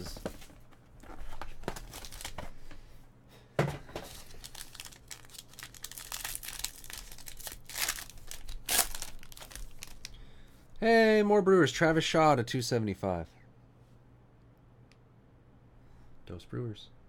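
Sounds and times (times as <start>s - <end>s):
plastic packaging crinkling: 1.0s - 2.6s, 4.0s - 10.2s.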